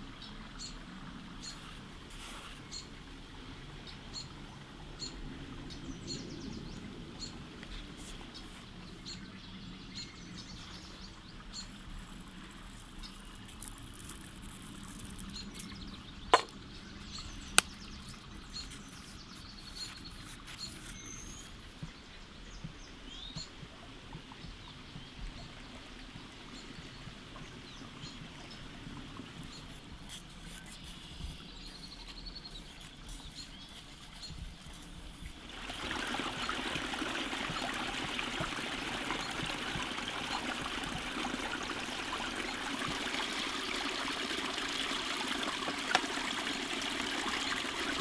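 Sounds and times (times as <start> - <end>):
outdoor background hiss: 0.0 - 48.0
small birds chirping: 5.0 - 23.6, 29.3 - 48.0.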